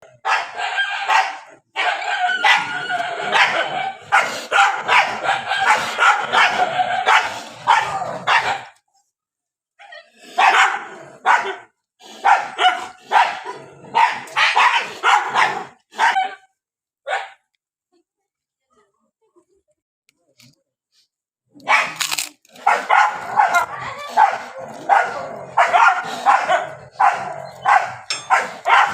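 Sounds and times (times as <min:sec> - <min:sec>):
dogs barking and yelping: 0:00.0 - 0:08.8, 0:09.8 - 0:16.5, 0:21.6 - 0:28.9.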